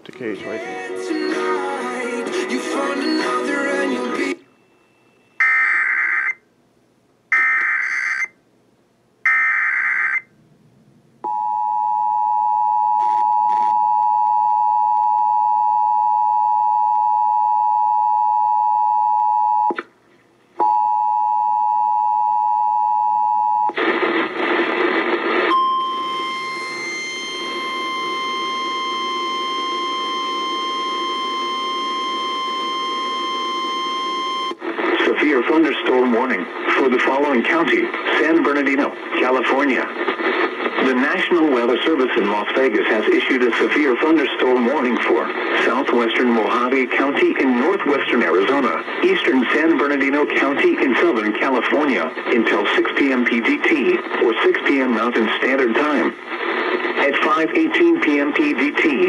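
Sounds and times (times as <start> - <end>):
noisy static: 0.0 - 11.3, 23.6 - 59.0
steady high alarm tone: 25.5 - 34.6
two-tone attention signal: 25.5 - 34.6.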